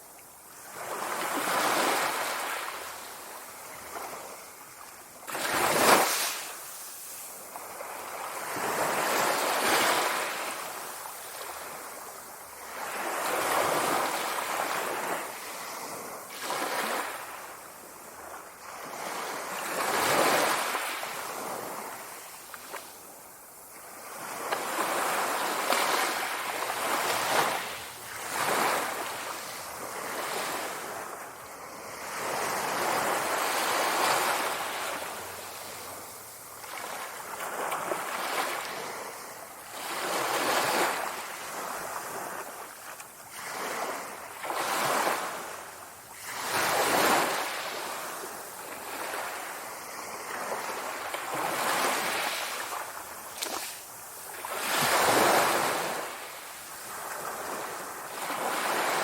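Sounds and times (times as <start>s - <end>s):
waves rolling in and washing out: 0.0s - 59.0s.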